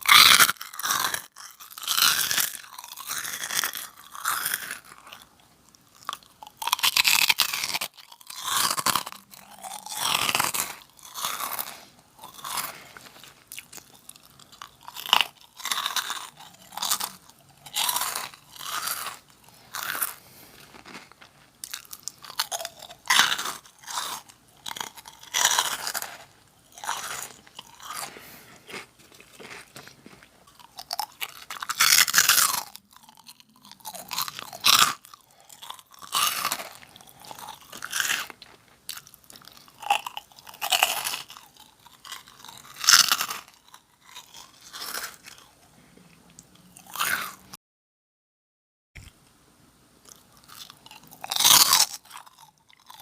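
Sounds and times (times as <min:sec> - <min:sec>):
crunching and chewing snack: 0:00.0 - 0:47.6, 0:50.0 - 0:53.0.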